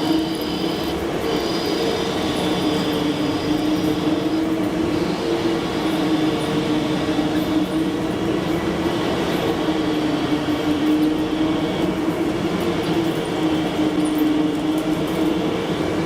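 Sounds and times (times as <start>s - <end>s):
machine tool humming: 0.0s - 9.9s
constant mechanical noise: 0.0s - 16.0s.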